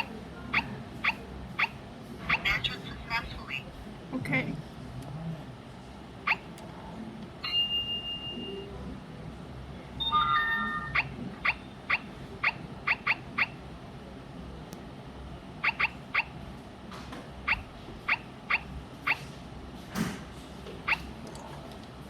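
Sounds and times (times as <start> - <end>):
keypad beeps: 7.4 - 8.7, 15.6 - 16.3.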